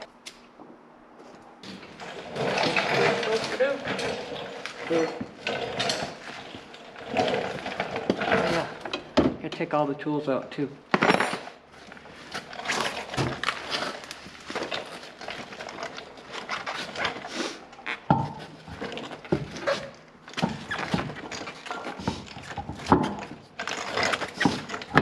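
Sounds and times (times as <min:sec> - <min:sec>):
hand tools clattering: 0:01.7 - 0:09.3.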